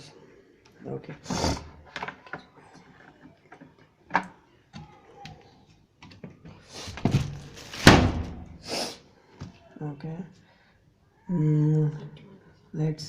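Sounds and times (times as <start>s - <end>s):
thump: 7.0s - 8.5s.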